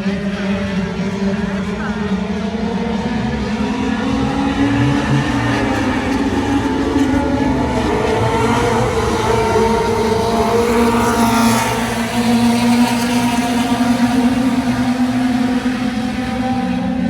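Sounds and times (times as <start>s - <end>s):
race car engines revving: 0.0s - 17.0s.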